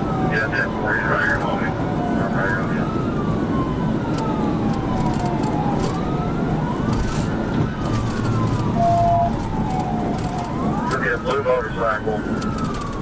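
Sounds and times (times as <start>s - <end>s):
police siren wailing: 0.0s - 13.0s
road and engine noise: 0.0s - 13.0s
short beep: 8.8s - 9.3s.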